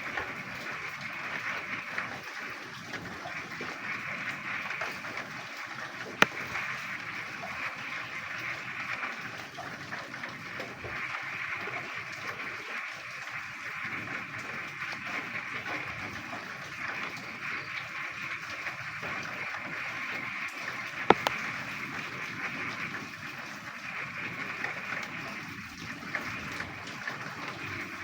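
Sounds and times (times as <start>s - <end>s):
rainfall: 0.0s - 28.0s
frogs croaking: 21.1s - 21.4s
sharp click: 21.1s - 21.4s.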